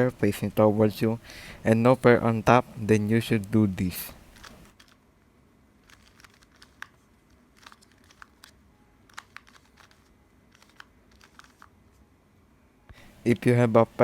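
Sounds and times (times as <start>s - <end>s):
puzzle cube plastic clicks: 5.8s - 11.8s.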